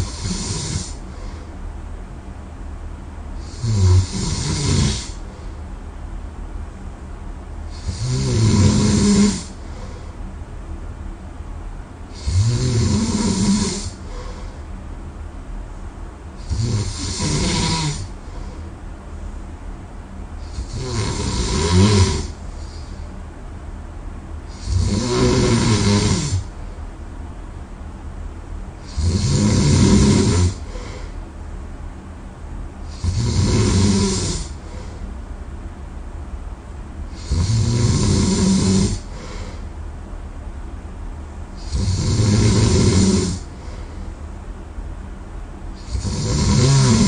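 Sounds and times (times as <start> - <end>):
person snoring: 0.0 - 1.3, 3.4 - 5.2, 7.7 - 10.0, 12.1 - 14.6, 16.4 - 18.6, 20.5 - 23.0, 24.5 - 26.5, 28.8 - 31.2, 32.9 - 34.9, 37.1 - 39.6, 41.6 - 43.8, 45.8 - 47.0.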